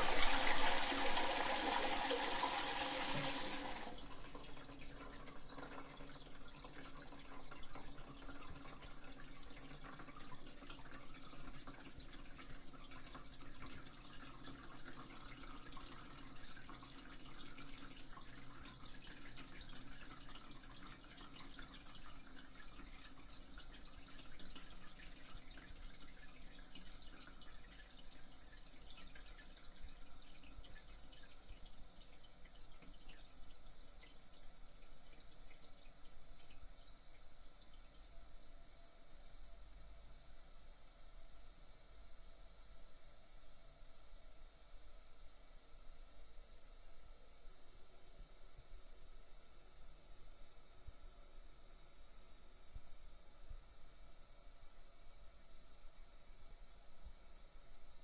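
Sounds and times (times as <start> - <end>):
toilet flush rushing water: 0.0 - 10.2
toilet water trickling and dripping: 0.0 - 58.0.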